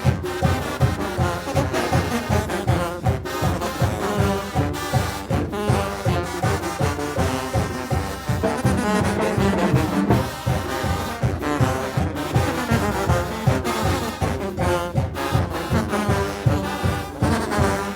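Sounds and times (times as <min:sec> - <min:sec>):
brass band playing: 0:00.0 - 0:17.9
trombones and trumpets: 0:00.0 - 0:17.9
low steady beat: 0:06.9 - 0:17.9.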